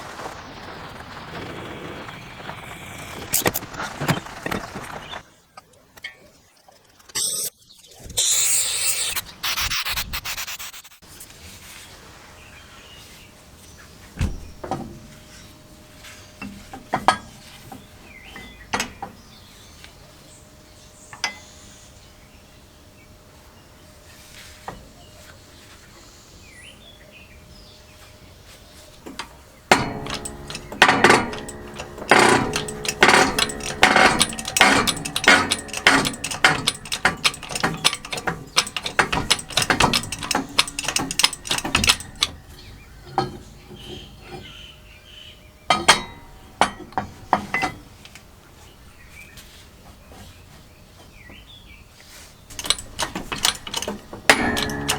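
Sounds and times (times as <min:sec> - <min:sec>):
metal parts knocking: 0:16.4 - 0:19.2, 0:29.1 - 0:44.7, 0:45.7 - 0:48.0, 0:52.5 - 0:54.9
ratchet wrench clicking: 0:29.7 - 0:42.4, 0:52.5 - 0:54.9.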